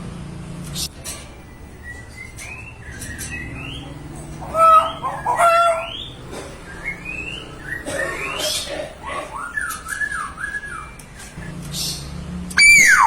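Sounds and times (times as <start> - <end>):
myna bird whistling calls: 1.5 - 12.0, 12.6 - 13.0.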